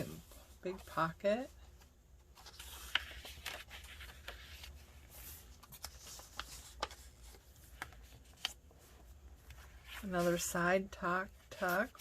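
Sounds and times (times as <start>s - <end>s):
paper pages rustling: 1.7s - 10.5s.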